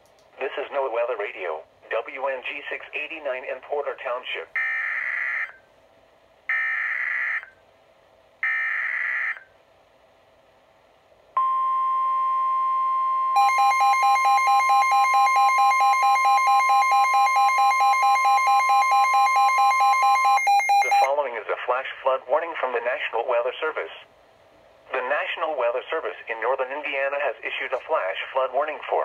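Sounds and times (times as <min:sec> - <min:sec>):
rapid alarm beeping: 0:11.4 - 0:21.1
steady warning alert tone: 0:11.4 - 0:21.1.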